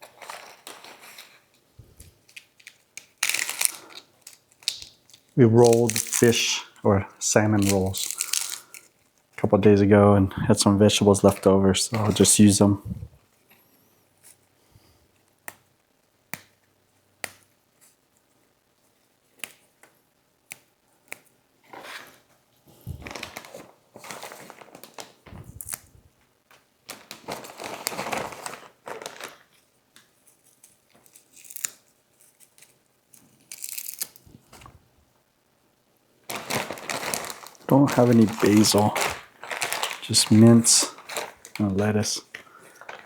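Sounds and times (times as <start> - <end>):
lettuce leaves tearing: 2.6 - 6.5, 7.6 - 8.8, 31.0 - 34.3, 36.3 - 43.0.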